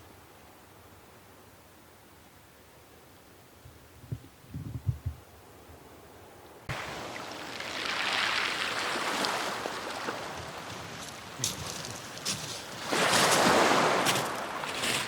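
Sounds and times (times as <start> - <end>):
wind thumps on microphone: 3.7 - 5.2
wave washing in: 6.7 - 15.0.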